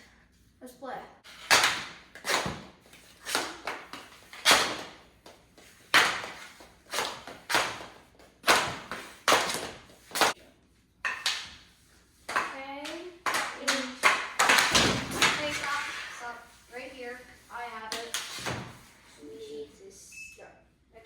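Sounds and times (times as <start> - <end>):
sticks striking ball: 1.4 - 10.4, 12.3 - 16.2
ball banging off walls: 13.2 - 16.1.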